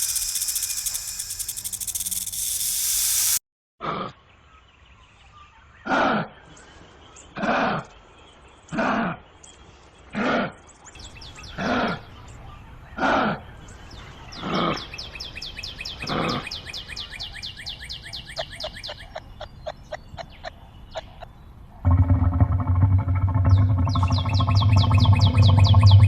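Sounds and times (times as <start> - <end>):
high chirping trill: 0.0 - 3.4, 21.8 - 26.0
animal harsh calls: 21.8 - 26.0.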